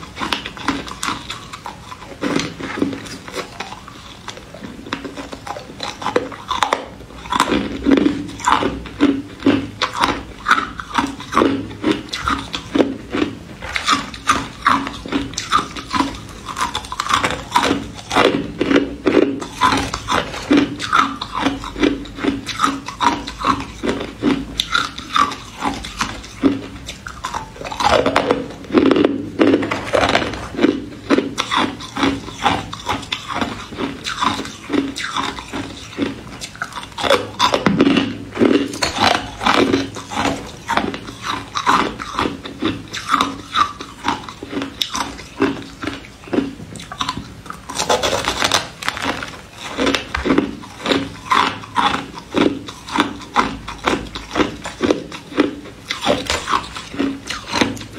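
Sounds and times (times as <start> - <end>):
person crunching ice: 4.8 - 57.8.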